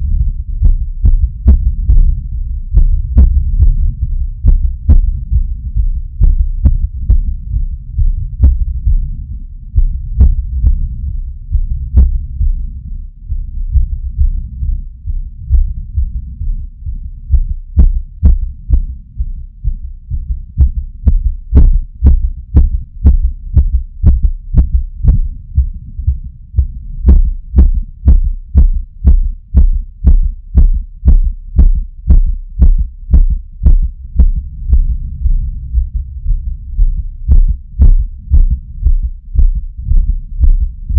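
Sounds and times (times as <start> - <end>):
heart beating fast: 0.0 - 12.7, 13.3 - 40.9
sharp click on heartbeat: 20.2 - 35.0, 36.8 - 40.7.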